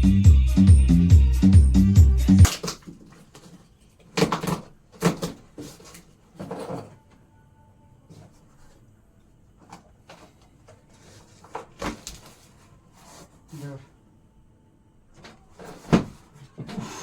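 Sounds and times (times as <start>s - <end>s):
knocks and scrapes of unpacking: 2.4s - 7.1s, 9.6s - 13.8s, 15.2s - 16.8s.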